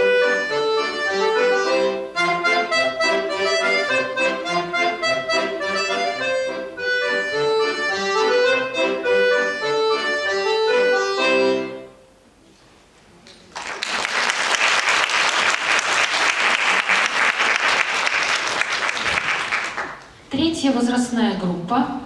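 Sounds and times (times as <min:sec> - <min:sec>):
accordion playing lively piece: 0:00.0 - 0:12.2.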